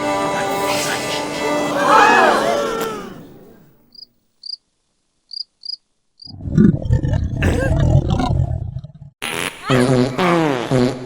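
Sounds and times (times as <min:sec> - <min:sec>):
high cricket chirps: 0:03.9 - 0:04.6, 0:05.3 - 0:06.3.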